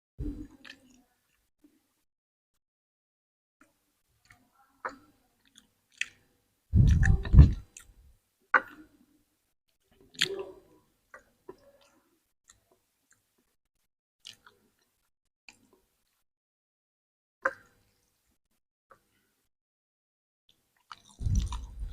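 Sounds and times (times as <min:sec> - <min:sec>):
chewing and crunching: 0:05.4 - 0:08.0, 0:09.9 - 0:10.6, 0:14.2 - 0:15.8, 0:20.8 - 0:21.9.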